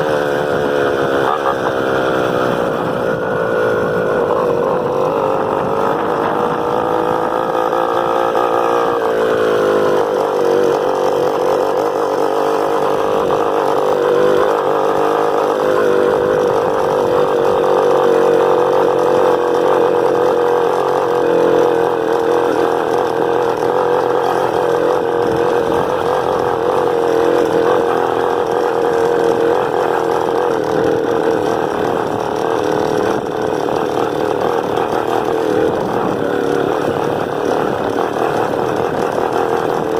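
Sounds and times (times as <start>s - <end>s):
motorcycle engine buzzing: 0.0s - 39.9s.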